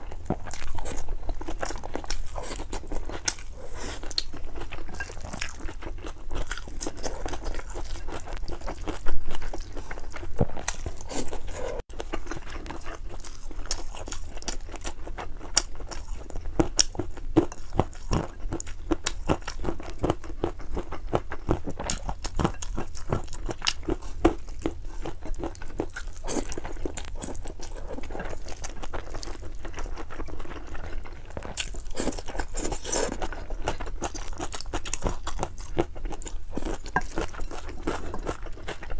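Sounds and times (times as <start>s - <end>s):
person chewing and crunching food: 0.0s - 38.9s.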